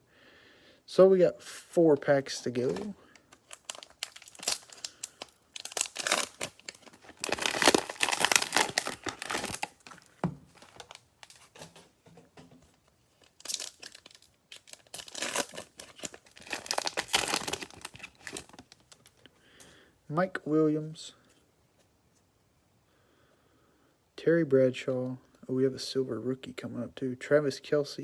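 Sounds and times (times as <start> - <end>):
cellophane wrapper tearing and crinkling: 2.5 - 11.6, 13.2 - 19.2.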